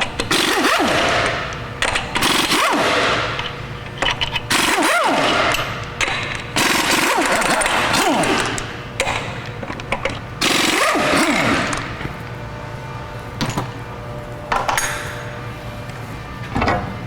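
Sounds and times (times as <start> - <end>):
impact wrench rattling: 0.0 - 12.0.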